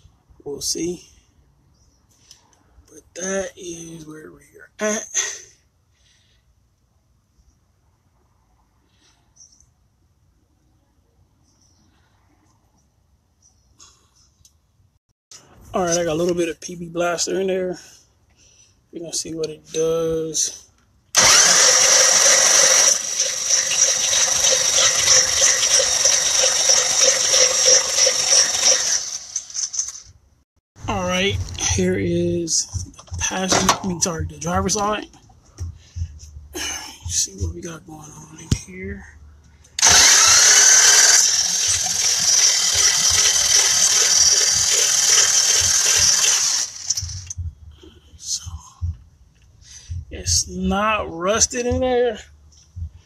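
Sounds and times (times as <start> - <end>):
electric power tool running: 21.2 - 30.0, 39.8 - 47.4
electric motor whirring: 21.2 - 30.1, 39.8 - 47.4.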